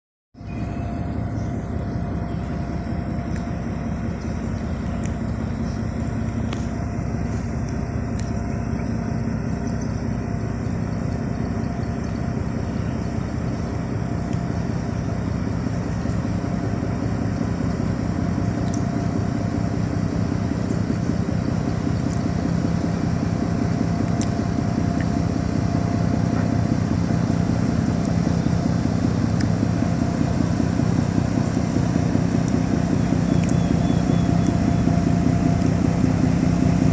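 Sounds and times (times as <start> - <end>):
boat engine running: 0.4 - 36.9.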